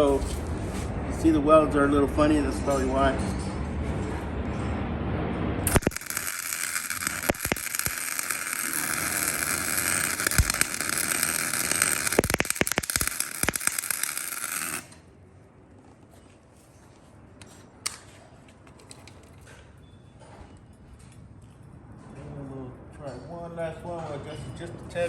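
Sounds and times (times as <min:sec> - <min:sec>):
welding arc crackling with pops: 0:05.7 - 0:15.1.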